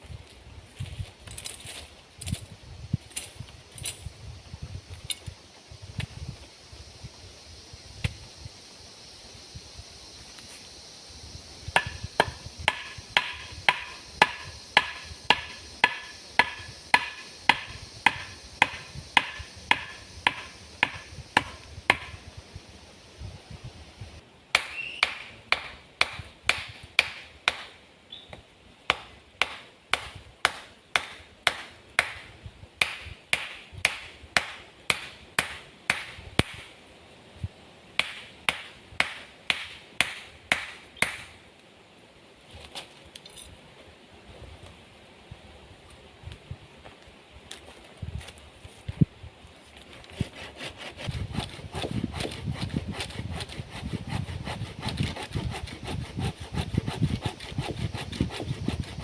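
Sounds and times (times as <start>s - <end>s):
rapid chopping blows: 11.7s - 22.2s, 24.5s - 27.8s, 28.9s - 36.7s, 50.1s - 59.0s.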